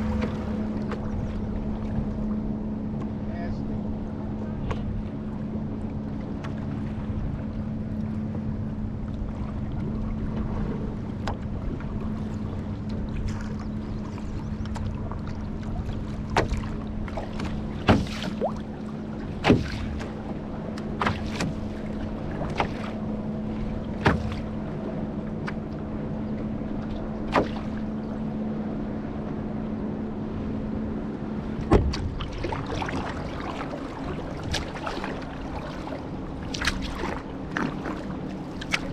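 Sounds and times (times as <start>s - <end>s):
paddle knocking against hull: 0.0s - 2.0s, 12.8s - 24.8s, 26.8s - 27.9s, 31.5s - 38.9s
low mechanical hum: 0.0s - 38.9s.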